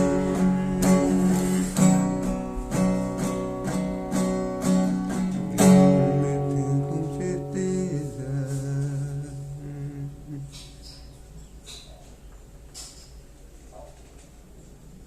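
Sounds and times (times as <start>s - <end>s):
acoustic guitar strumming: 0.0s - 11.4s.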